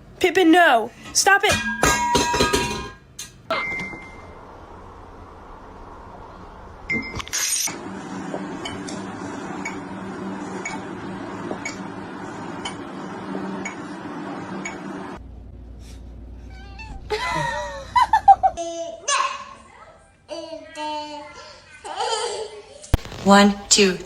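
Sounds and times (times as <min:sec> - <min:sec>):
low hum: 0:02.8 - 0:18.8.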